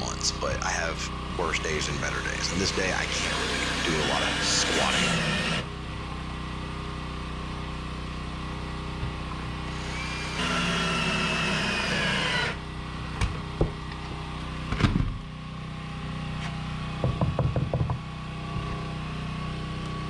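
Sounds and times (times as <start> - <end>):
steady low hum: 0.0 - 17.1
power drill driving into wood: 2.8 - 5.7, 9.7 - 12.6
knocks on wood: 17.0 - 18.7.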